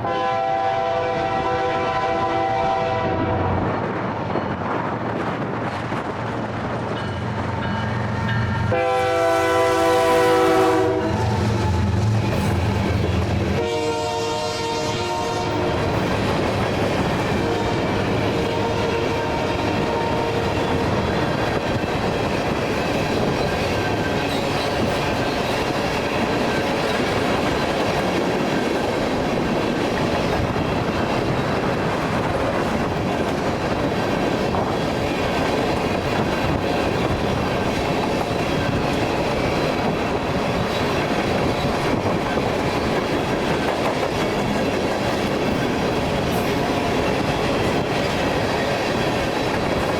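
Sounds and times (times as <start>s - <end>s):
train horn: 0.0s - 3.6s, 8.4s - 12.1s, 13.4s - 16.1s, 17.3s - 21.0s
train wheels on rails: 0.0s - 49.9s.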